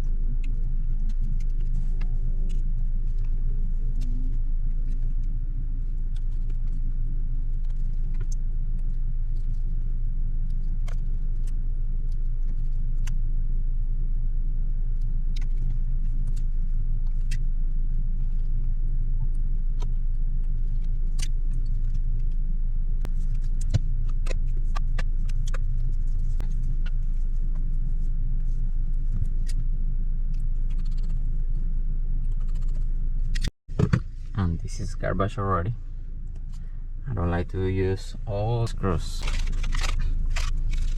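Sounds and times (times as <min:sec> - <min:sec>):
vehicle engine idling: 0:00.0 - 0:40.9.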